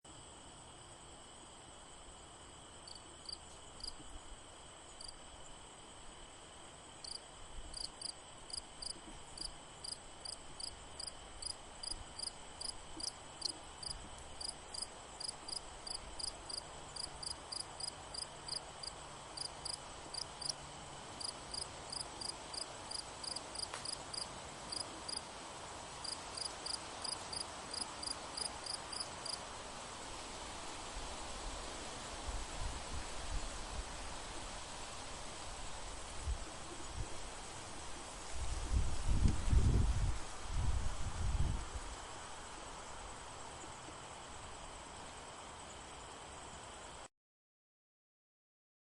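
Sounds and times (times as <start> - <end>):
cricket chirping: 0.1 - 29.4, 41.5 - 47.1.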